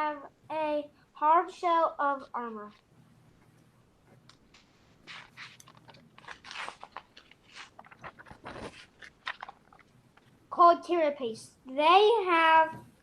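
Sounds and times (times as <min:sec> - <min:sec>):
crunching and rustling: 0:04.4 - 0:10.4.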